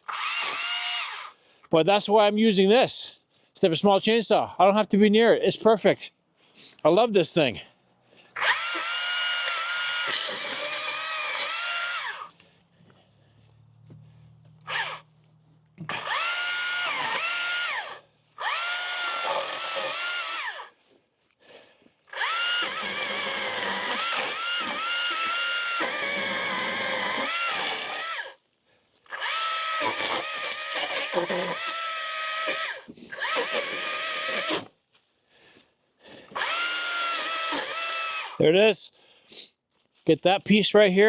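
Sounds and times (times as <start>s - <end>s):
pole saw cutting wood: 0.0s - 1.4s, 8.4s - 12.4s, 14.6s - 15.1s, 15.8s - 20.8s, 22.1s - 28.4s, 29.1s - 34.7s, 36.3s - 38.4s.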